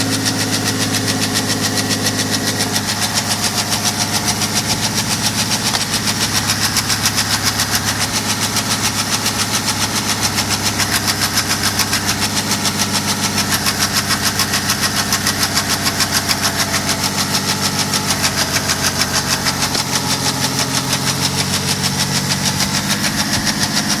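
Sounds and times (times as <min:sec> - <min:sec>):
diesel engine idling with knock: 0:00.0 - 0:24.0.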